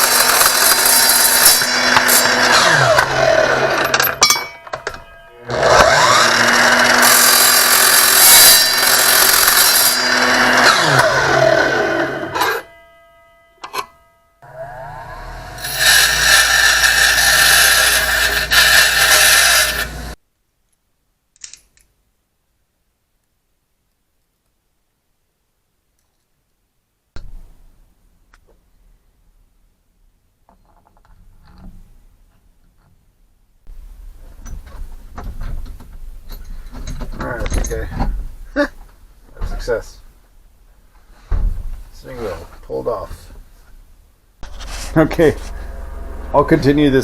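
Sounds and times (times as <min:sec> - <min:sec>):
power tool motor cutting rod: 0:00.0 - 0:04.1, 0:05.5 - 0:12.6, 0:14.4 - 0:20.2
hand tools knocking on metal: 0:03.9 - 0:06.7
low rumble: 0:44.4 - 0:47.0.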